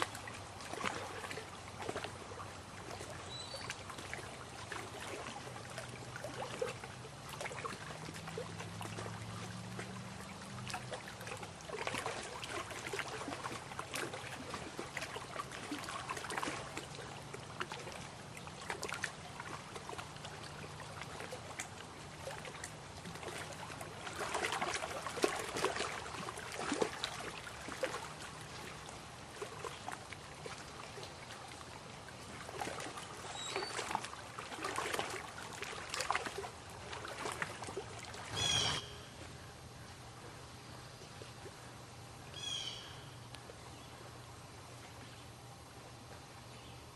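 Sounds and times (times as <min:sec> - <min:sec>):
water lapping at shore: 0:00.0 - 0:46.9.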